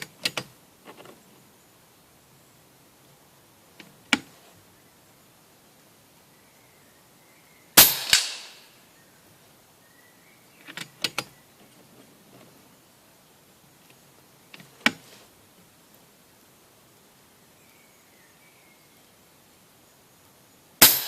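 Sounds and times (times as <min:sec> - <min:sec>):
pellet striking target: 0:07.8 - 0:08.7
air rifle shot: 0:07.8 - 0:08.8.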